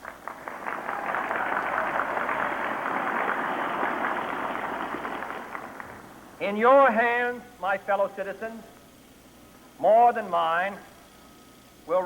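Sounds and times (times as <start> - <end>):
large crowd applauding: 0.0 - 6.2.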